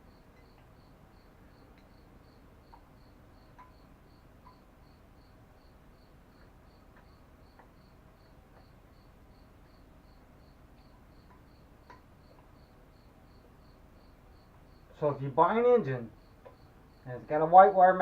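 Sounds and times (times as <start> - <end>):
cricket chirping: 0.0 - 18.0
faint clicks: 2.7 - 2.9, 3.5 - 4.7, 6.3 - 12.8.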